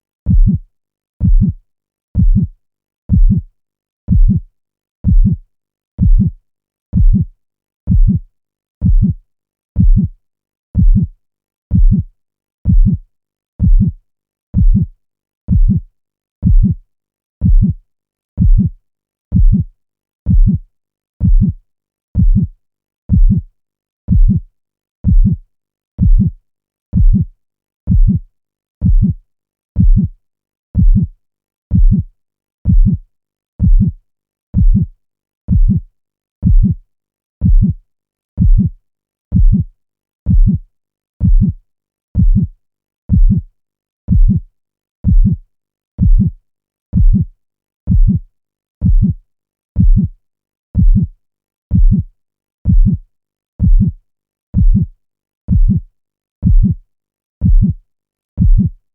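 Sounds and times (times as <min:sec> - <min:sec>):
heartbeat double thump: 0:00.3 - 0:00.6, 0:01.2 - 0:01.6, 0:02.2 - 0:02.5, 0:03.1 - 0:03.4, 0:04.1 - 0:04.4, 0:05.0 - 0:05.4, 0:06.0 - 0:06.3, 0:07.0 - 0:07.2, 0:07.9 - 0:08.2, 0:08.8 - 0:09.2, 0:09.8 - 0:10.1, 0:10.8 - 0:11.1, 0:11.7 - 0:12.0, 0:12.7 - 0:13.0, 0:13.6 - 0:14.0, 0:14.6 - 0:14.9, 0:15.5 - 0:15.8, 0:16.4 - 0:16.8, 0:17.4 - 0:17.8, 0:18.4 - 0:18.7, 0:20.3 - 0:20.6, 0:22.2 - 0:22.5, 0:23.1 - 0:23.4, 0:24.1 - 0:24.4, 0:25.0 - 0:25.4, 0:26.0 - 0:26.3, 0:27.0 - 0:27.2, 0:27.9 - 0:28.2, 0:28.8 - 0:29.2, 0:29.8 - 0:30.1, 0:30.8 - 0:31.1, 0:31.7 - 0:32.0, 0:32.7 - 0:33.0, 0:33.6 - 0:34.0, 0:34.6 - 0:34.8, 0:35.5 - 0:35.8, 0:36.4 - 0:36.8, 0:37.4 - 0:37.7, 0:38.4 - 0:38.7, 0:39.3 - 0:39.6, 0:40.3 - 0:40.6, 0:41.2 - 0:41.6, 0:42.2 - 0:42.5, 0:43.1 - 0:43.4, 0:44.1 - 0:44.4, 0:45.0 - 0:45.4, 0:46.0 - 0:46.3, 0:47.0 - 0:47.2, 0:47.9 - 0:48.2, 0:48.8 - 0:49.1, 0:49.8 - 0:50.1, 0:50.8 - 0:51.1, 0:51.7 - 0:52.0, 0:52.7 - 0:53.0, 0:53.6 - 0:54.0, 0:54.6 - 0:54.8, 0:55.5 - 0:55.8, 0:56.4 - 0:56.8, 0:57.4 - 0:57.7, 0:58.4 - 0:58.7.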